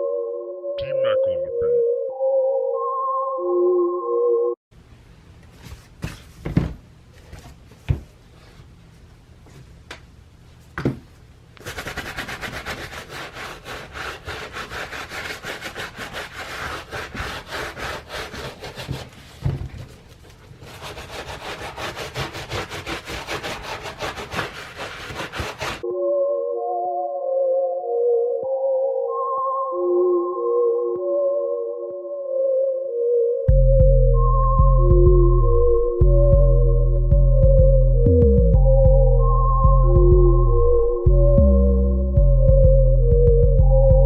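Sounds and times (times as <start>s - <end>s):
brush scrubbing a sneaker: 11.6s - 25.8s.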